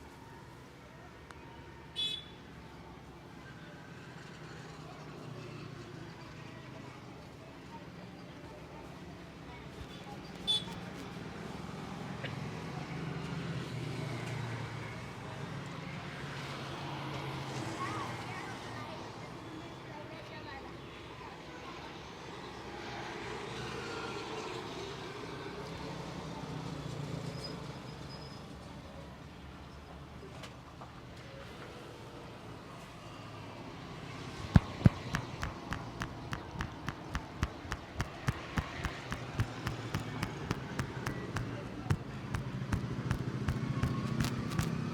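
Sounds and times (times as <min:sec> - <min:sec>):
hands striking a head: 0:34.6 - 0:44.9.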